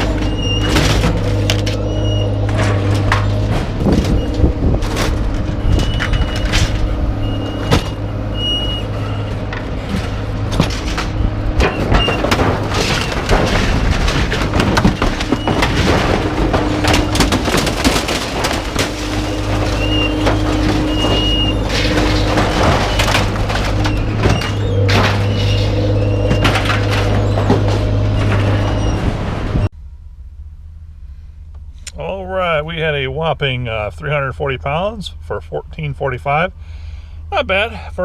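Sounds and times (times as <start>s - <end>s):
metal clanks and knocks: 0.0s - 29.6s
vehicle engine running: 0.0s - 38.0s.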